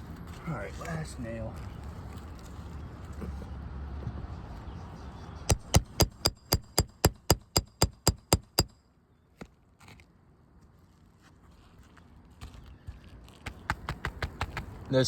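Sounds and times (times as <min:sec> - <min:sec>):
hammer striking metal nail puller: 0:05.5 - 0:08.8.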